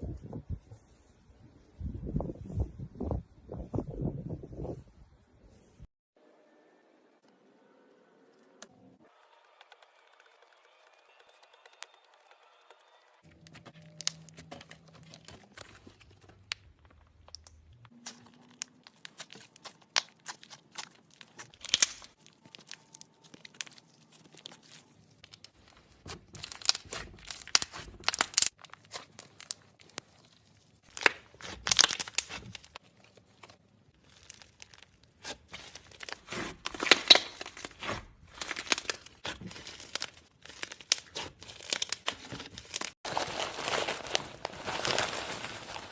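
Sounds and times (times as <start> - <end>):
slime crackling and crinkling: 13.3 - 45.9.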